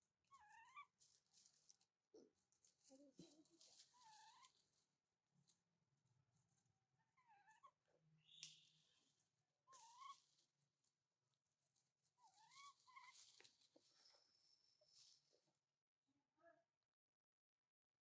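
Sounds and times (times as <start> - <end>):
soft rustling: 0.5 - 6.8, 9.0 - 15.6.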